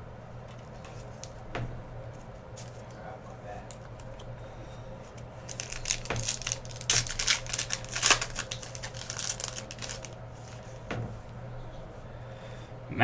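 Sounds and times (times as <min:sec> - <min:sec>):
steady low hum: 0:00.0 - 0:13.0
cards and wrapping crinkling: 0:02.1 - 0:04.3, 0:05.0 - 0:10.8.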